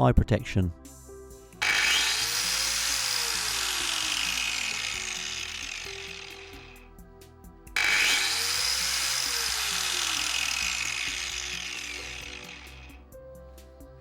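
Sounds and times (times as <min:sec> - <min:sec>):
background music: 0:00.0 - 0:14.0
angle grinder whining: 0:01.6 - 0:06.9, 0:07.8 - 0:13.0.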